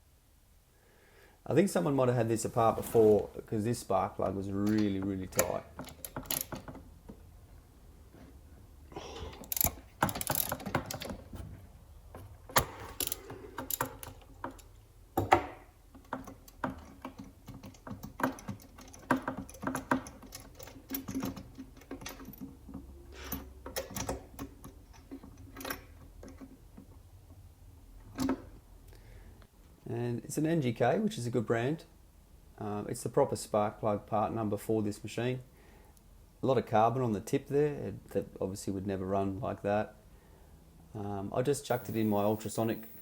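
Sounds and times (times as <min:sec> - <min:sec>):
metal tool clatter: 0:09.2 - 0:11.2, 0:12.6 - 0:14.2
socket ratchet clicking: 0:09.4 - 0:11.1, 0:12.6 - 0:13.9, 0:41.7 - 0:43.0.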